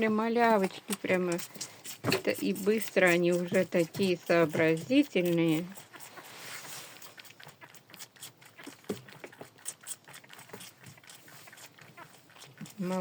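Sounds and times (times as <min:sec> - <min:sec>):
goats rustling in hay: 0:00.2 - 0:07.7.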